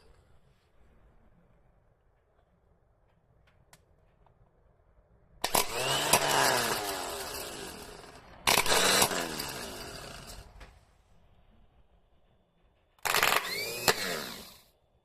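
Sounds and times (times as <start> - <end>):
starter motor grinding whirr: 5.4 - 10.7, 13.0 - 14.7.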